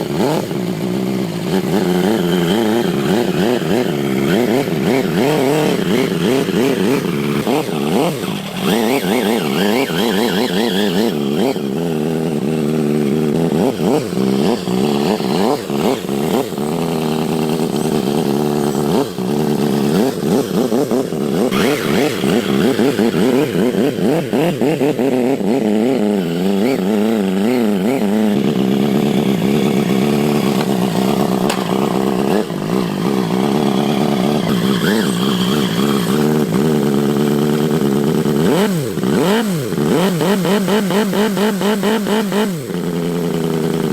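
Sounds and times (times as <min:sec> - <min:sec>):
small engine buzzing: 0:00.0 - 0:43.9.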